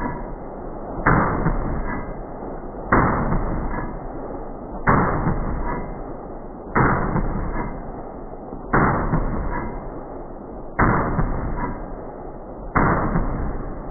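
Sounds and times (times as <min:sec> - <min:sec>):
rifle shots echoing: 0:08.7 - 0:10.0, 0:10.8 - 0:12.0, 0:12.8 - 0:13.9.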